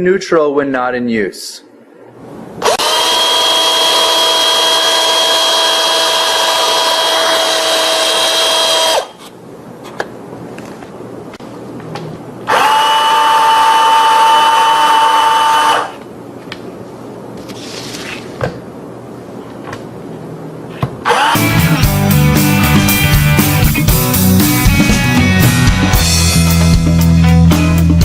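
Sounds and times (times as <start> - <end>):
power tool motor whine: 2.6 - 9.1, 12.5 - 16.0, 21.1 - 21.6.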